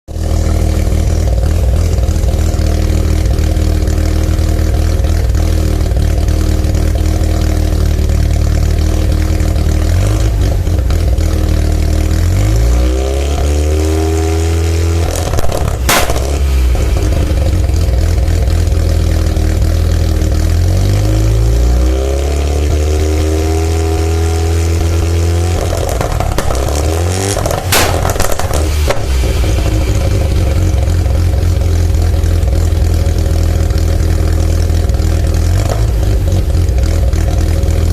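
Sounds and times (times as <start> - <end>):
rotary engine idling and revving: 0.1 - 37.9
exhaust pop: 15.0 - 18.8, 25.5 - 32.6, 34.9 - 37.7.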